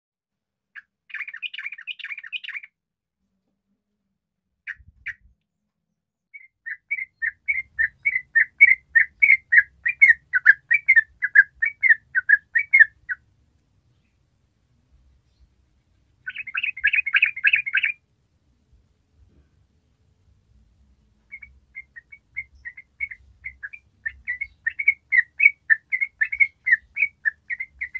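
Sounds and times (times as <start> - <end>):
bulbul singing: 0.8 - 2.7, 6.4 - 13.2, 16.2 - 18.0, 21.3 - 27.9.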